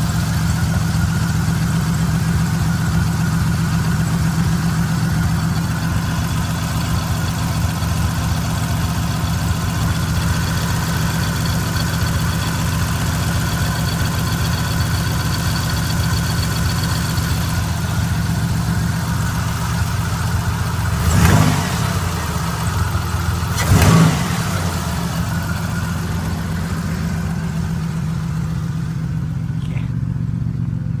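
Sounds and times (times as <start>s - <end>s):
car engine idling: 0.0s - 31.0s
engine surges: 17.6s - 31.0s.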